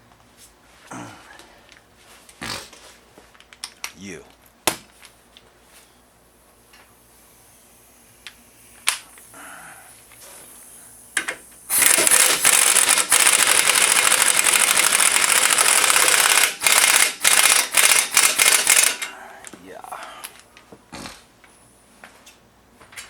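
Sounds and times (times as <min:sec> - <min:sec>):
impact wrench hammering: 0:11.2 - 0:19.1
sharp metallic clicks: 0:11.8 - 0:19.1.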